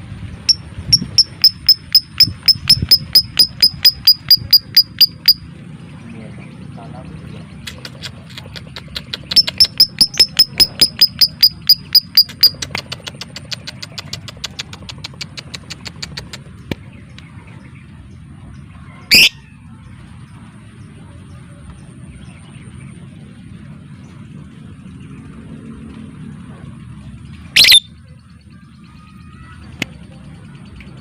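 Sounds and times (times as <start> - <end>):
lovebird chirping: 0.4 - 5.4, 7.6 - 16.8, 27.5 - 28.0.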